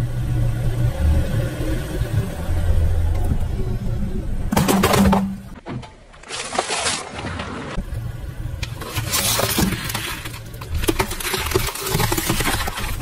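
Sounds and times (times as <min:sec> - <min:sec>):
objects cracking under car tyre: 0:08.6 - 0:13.0.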